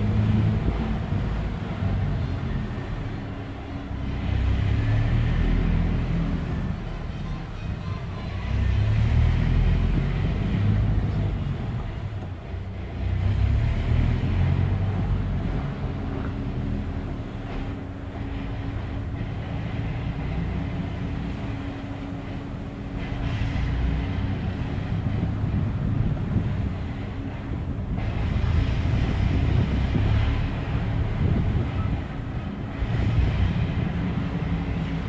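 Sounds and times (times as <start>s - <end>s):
car engine rumble: 8.7s - 35.0s.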